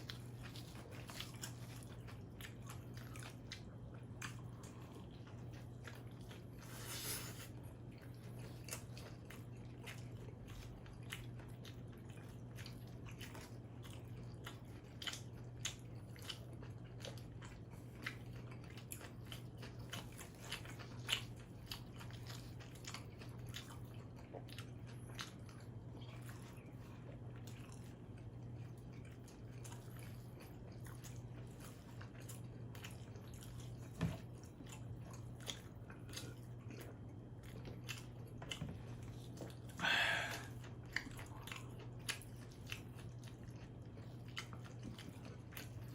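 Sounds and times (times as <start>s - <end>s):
person chewing pizza: 0.0s - 45.9s
steady low hum: 0.0s - 45.9s.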